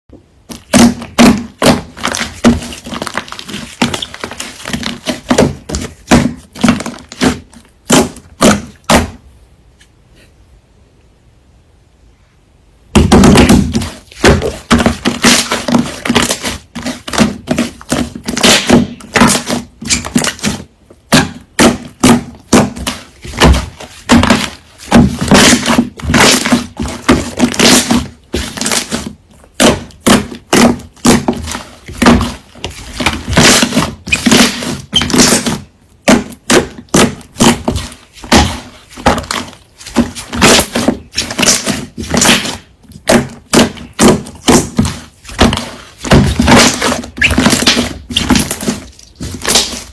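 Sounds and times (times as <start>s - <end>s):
loud banging and thudding: 12.9s - 16.2s.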